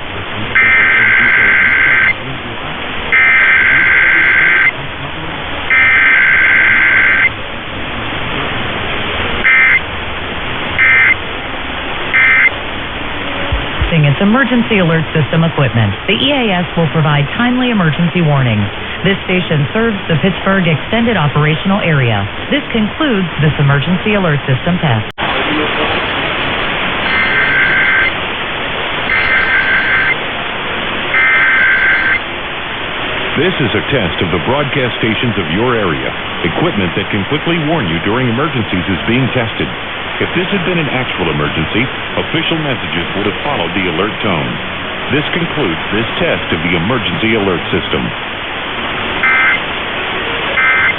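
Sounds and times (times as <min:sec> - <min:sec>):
radio hiss: 0:00.0 - 0:50.9
buzzing two-tone data bursts: 0:00.6 - 0:02.2, 0:03.1 - 0:04.8, 0:05.7 - 0:07.3, 0:09.4 - 0:09.8, 0:10.8 - 0:11.2, 0:12.1 - 0:12.5, 0:27.0 - 0:28.2, 0:29.1 - 0:30.2, 0:31.1 - 0:32.2, 0:49.2 - 0:49.6, 0:50.6 - 0:50.9.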